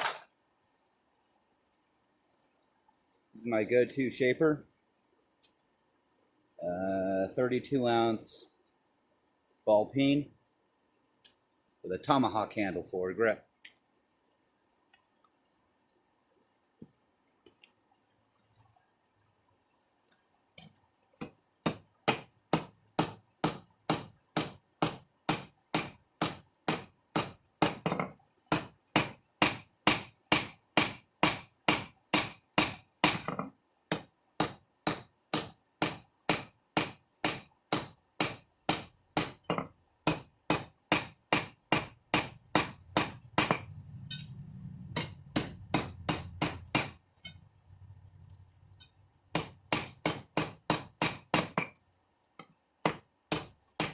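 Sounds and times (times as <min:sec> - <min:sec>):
hammer blows ringing on metal: 0:28.5 - 0:33.3, 0:40.1 - 0:44.3, 0:44.9 - 0:47.0.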